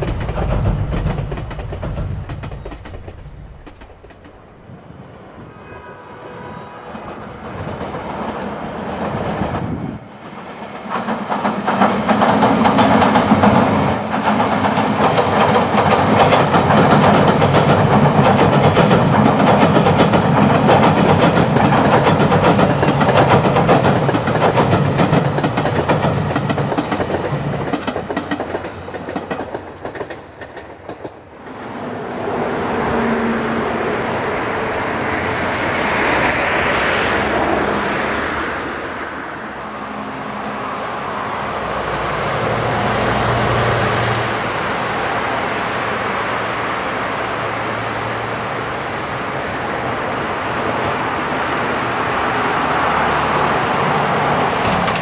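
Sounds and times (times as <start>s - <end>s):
wheels clattering over rails: 0.0s - 4.7s, 10.7s - 31.9s, 53.0s - 55.0s
train rumbling over steel bridge: 0.0s - 55.0s.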